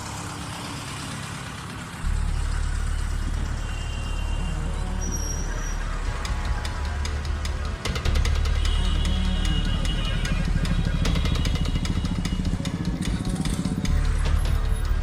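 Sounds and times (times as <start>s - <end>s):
road traffic noise: 0.0s - 15.0s
deep low rumble: 2.0s - 8.2s.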